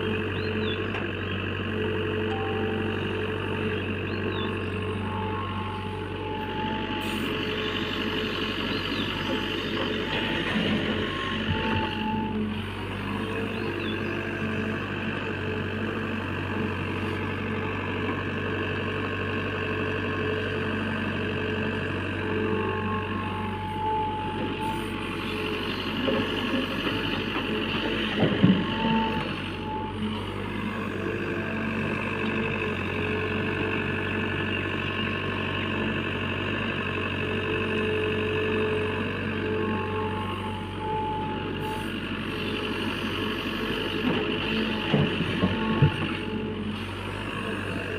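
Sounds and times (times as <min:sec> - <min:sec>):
diesel engine running: 0:00.0 - 0:47.9.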